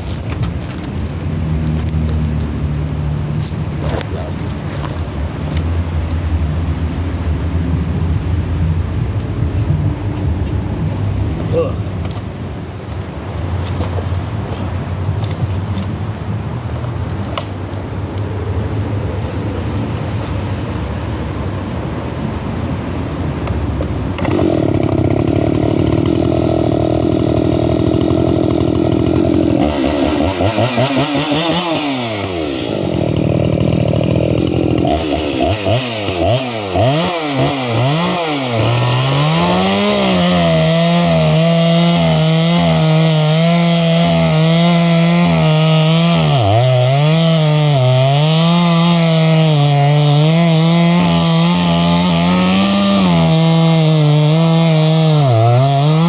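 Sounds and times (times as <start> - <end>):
chainsaw cutting a log: 0.0 - 5.1, 24.2 - 56.0.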